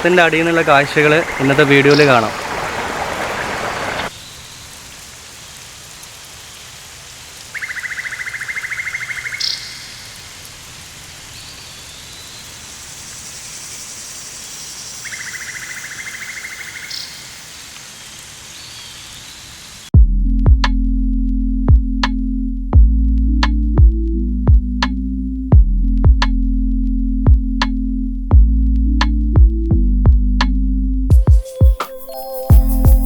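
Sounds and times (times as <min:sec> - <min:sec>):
running water hiss: 0:00.0 - 0:19.9.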